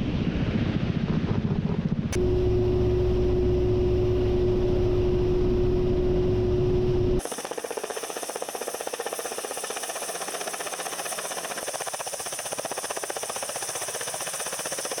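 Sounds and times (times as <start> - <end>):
high turbine whine: 0.0 - 11.7
helicopter rotors beating: 0.0 - 15.0.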